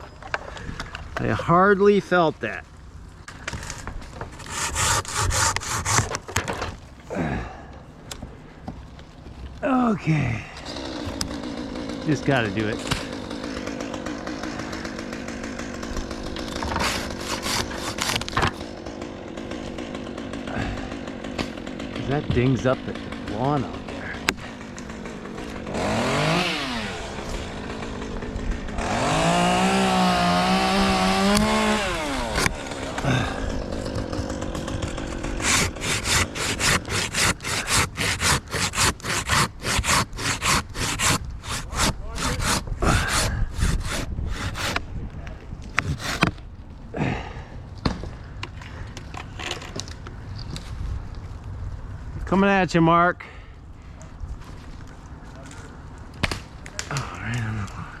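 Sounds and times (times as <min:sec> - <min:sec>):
handsaw cutting wood: 0:03.6 - 0:06.4, 0:10.6 - 0:44.9, 0:45.8 - 0:46.4
chainsaw revving: 0:04.5 - 0:06.0, 0:10.4 - 0:44.8.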